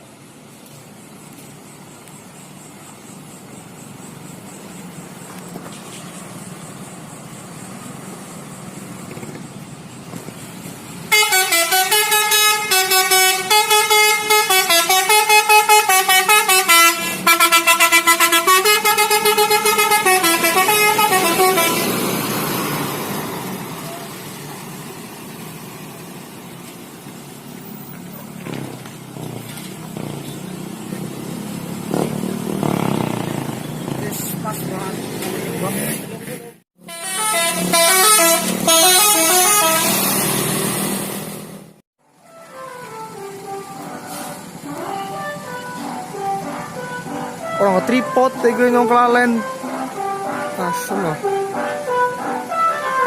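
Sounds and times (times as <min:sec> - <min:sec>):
road noise: 0:00.0 - 0:53.0
multi-tone musical bus horn: 0:11.1 - 0:24.1, 0:36.8 - 0:41.5, 0:42.2 - 0:53.0.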